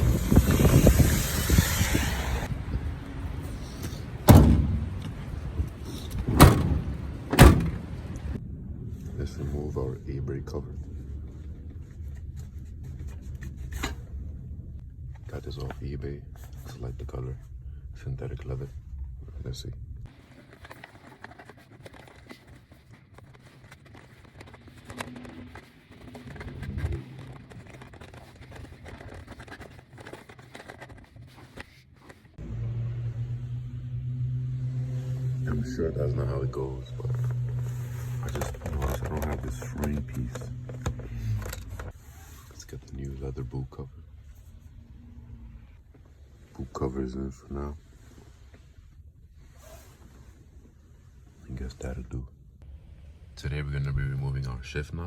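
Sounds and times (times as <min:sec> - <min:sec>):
parts clicking and rustling: 0:20.1 - 0:32.4, 0:36.8 - 0:42.8
steady low hum: 0:31.3 - 0:49.5.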